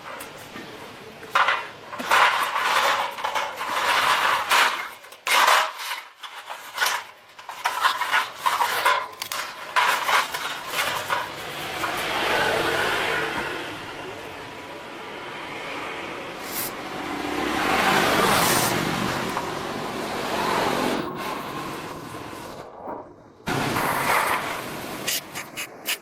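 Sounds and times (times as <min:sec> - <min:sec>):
metal clinking and scraping: 0:01.2 - 0:12.7.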